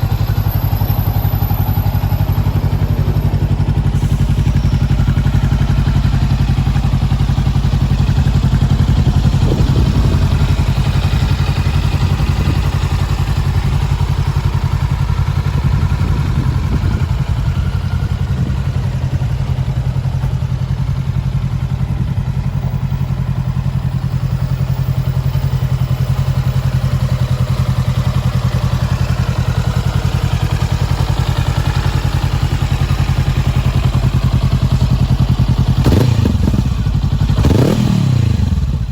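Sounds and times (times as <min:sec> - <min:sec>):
motorcycle engine idling: 0:00.0 - 0:38.9.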